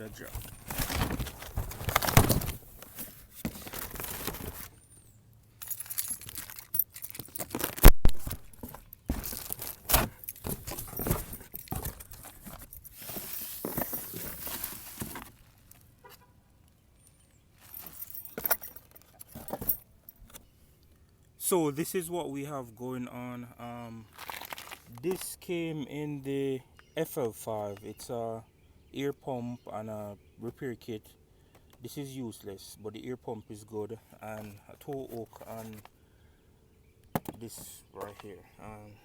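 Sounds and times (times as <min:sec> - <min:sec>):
metal tools clinking: 0:00.0 - 0:15.3, 0:17.6 - 0:20.4.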